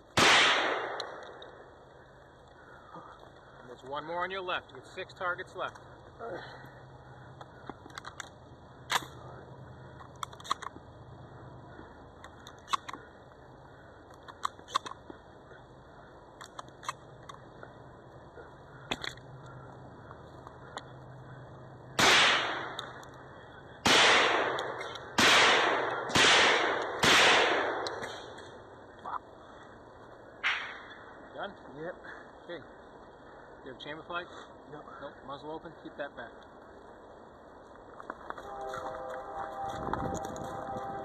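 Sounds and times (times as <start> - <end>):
gunshots echoing: 0.1 - 1.6, 22.0 - 22.8, 23.8 - 28.4, 30.4 - 31.0.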